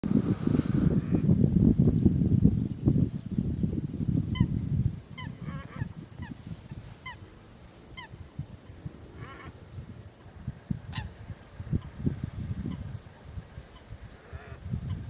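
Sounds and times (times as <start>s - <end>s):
goose-like bird calls: 5.2s - 8.1s, 9.2s - 9.6s, 13.7s - 15.0s.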